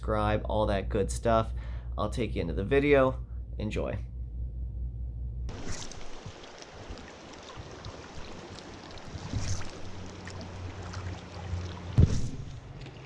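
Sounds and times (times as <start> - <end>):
creek water rushing: 5.5 - 12.0.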